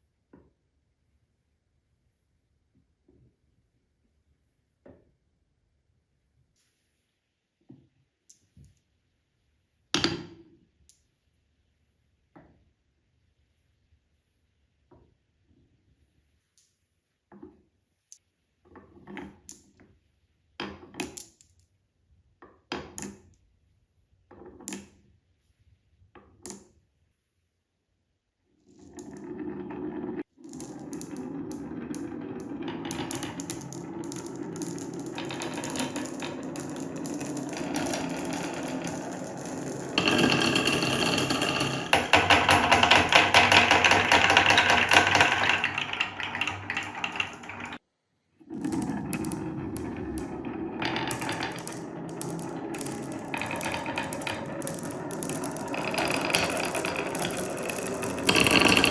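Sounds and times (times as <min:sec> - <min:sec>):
marbles rattling down wooden run: 0:29.0 - 0:47.8, 0:48.6 - 0:58.9.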